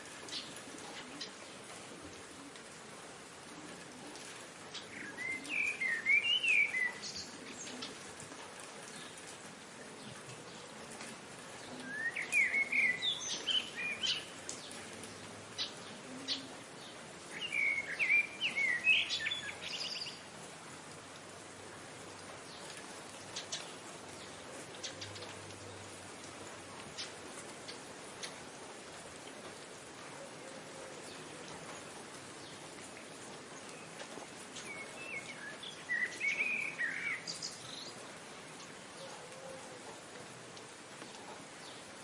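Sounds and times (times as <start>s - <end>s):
rain falling: 0.0s - 42.0s.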